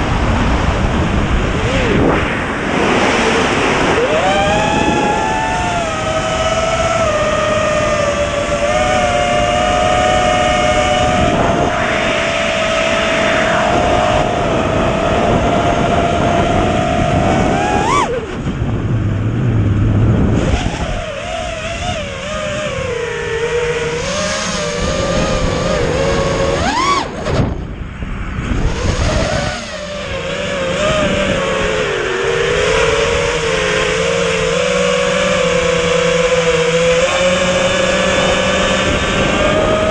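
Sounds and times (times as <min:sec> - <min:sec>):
drone motors whining: 0:00.0 - 0:39.9
low rushing wind noise: 0:00.0 - 0:39.9.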